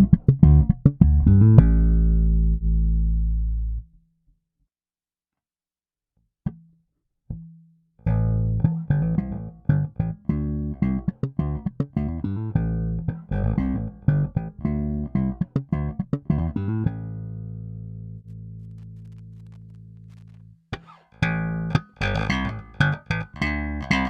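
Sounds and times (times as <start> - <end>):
electric bass playing: 0.0 - 4.0, 8.0 - 20.5, 21.2 - 24.0.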